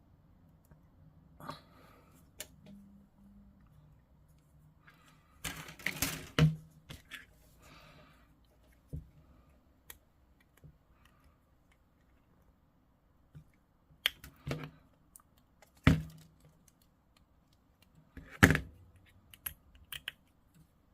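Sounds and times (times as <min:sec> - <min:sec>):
parts clattering: 0:04.9 - 0:07.3
tools and plastic parts clicking: 0:19.0 - 0:20.5.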